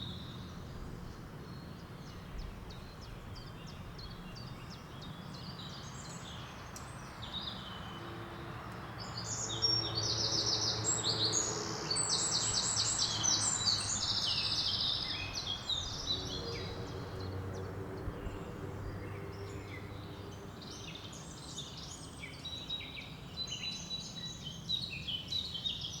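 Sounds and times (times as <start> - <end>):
birds chirping and singing: 9.0 - 25.9.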